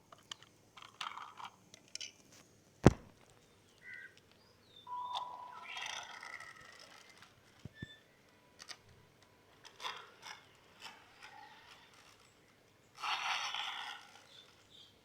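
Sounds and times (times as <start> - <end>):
toy car drivetrain clicks: 0.0 - 2.2, 5.7 - 15.0
toy car gear noise: 0.2 - 2.2, 5.6 - 15.0.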